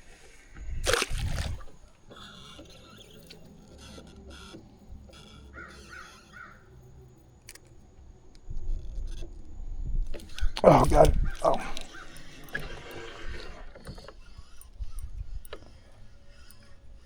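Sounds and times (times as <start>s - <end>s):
crows cawing: 5.4s - 6.7s, 11.2s - 12.4s.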